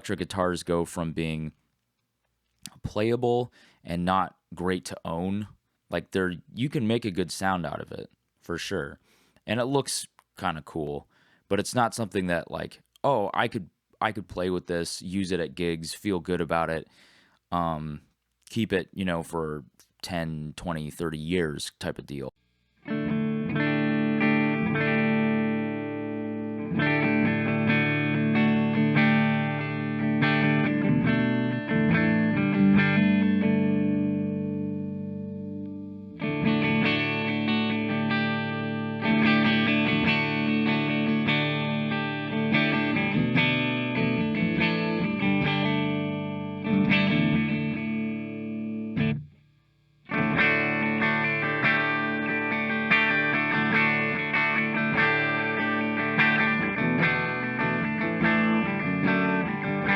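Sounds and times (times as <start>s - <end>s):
electric guitar strumming chords: 22.8s - 49.3s, 50.1s - 59.9s.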